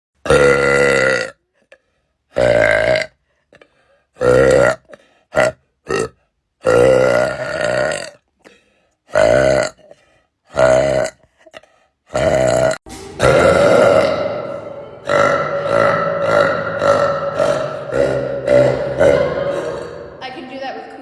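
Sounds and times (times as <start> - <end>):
woman burping loudly: 0.2 - 1.4, 2.4 - 3.2, 4.2 - 8.2, 9.1 - 9.9, 10.5 - 20.4.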